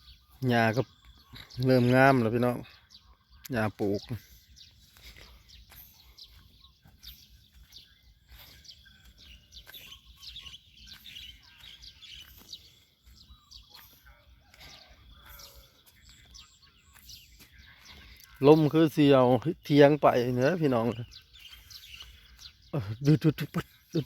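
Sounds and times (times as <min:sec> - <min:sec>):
small birds chirping: 0:00.0 - 0:24.0.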